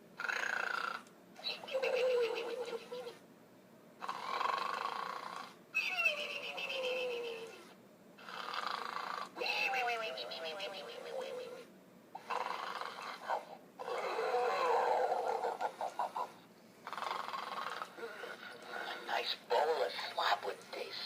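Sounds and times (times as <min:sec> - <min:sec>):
toy snoring sounds: 0:00.2 - 0:03.1, 0:04.0 - 0:05.6, 0:08.2 - 0:11.6, 0:12.2 - 0:20.2.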